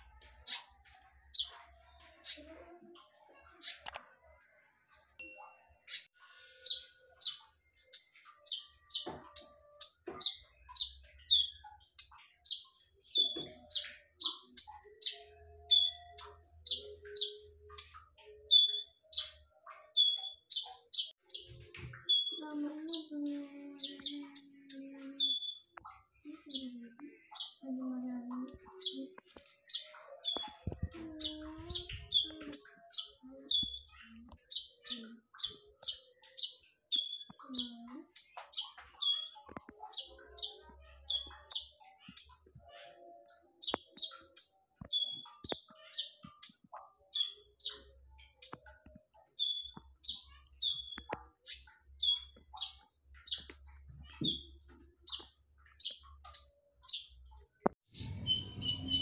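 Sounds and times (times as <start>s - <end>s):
bird sharp high chirps: 5.3s - 23.2s, 29.6s - 57.2s, 57.9s - 59.0s.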